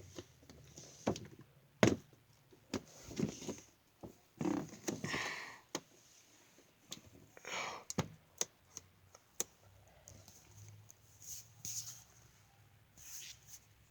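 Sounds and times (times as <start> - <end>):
plastic and cardboard knocks: 1.8 - 2.1.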